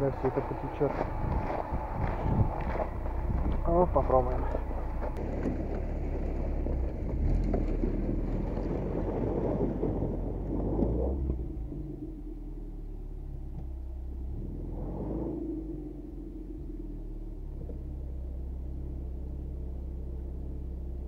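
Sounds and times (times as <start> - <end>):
car engine under hard throttle: 0.0 - 21.0.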